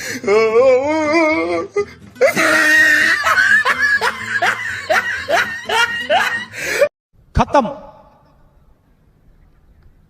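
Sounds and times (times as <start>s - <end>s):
people laughing: 2.2s - 6.9s.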